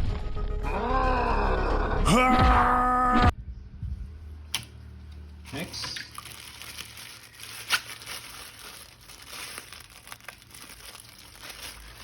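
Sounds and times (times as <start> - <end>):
plastic packaging crinkling: 5.5 - 12.0.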